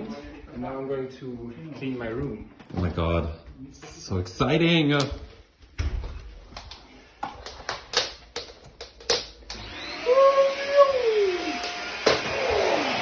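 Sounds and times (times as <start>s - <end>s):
vacuum cleaner motor whirring: 9.4s - 13.0s.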